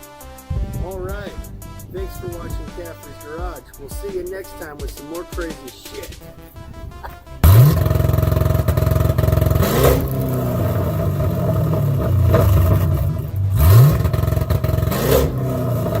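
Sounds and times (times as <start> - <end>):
car engine revving: 0.5 - 4.4, 6.1 - 16.0.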